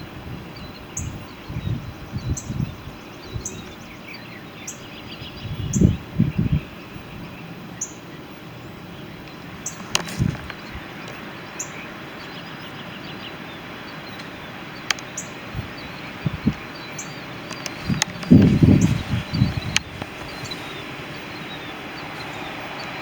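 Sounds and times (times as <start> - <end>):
bird chirping: 0.0 - 23.0
steady background hiss: 0.0 - 23.0
sharp clicks: 14.2 - 15.1, 17.4 - 19.0.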